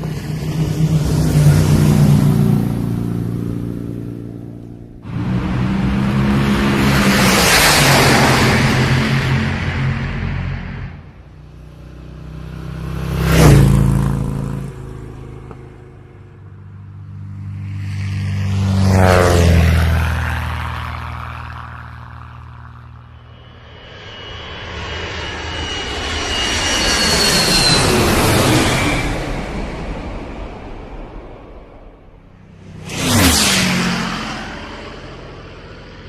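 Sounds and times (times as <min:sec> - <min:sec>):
vehicles passing by: 0:00.0 - 0:36.0
hissing whining engine: 0:20.4 - 0:31.0.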